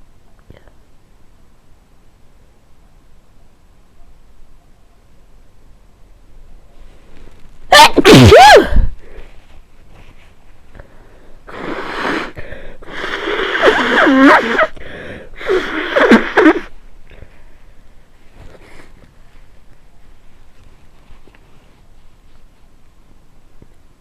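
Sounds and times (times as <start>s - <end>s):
person blowing nose: 7.7s - 8.8s, 11.5s - 14.8s, 15.4s - 16.7s
person sneezing: 7.7s - 8.9s, 11.5s - 14.8s, 15.4s - 16.7s.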